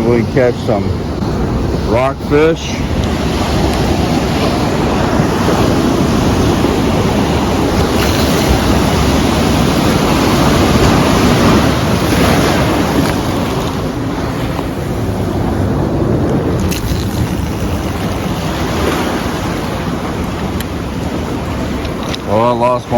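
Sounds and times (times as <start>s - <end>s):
surf washing against rocks: 0.0s - 22.9s
wind buffeting microphone: 0.0s - 22.9s.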